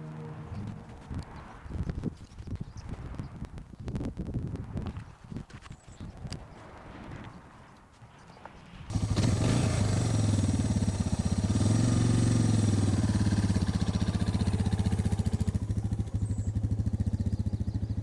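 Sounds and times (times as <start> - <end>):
motorcycle engine idling: 8.9 - 18.0.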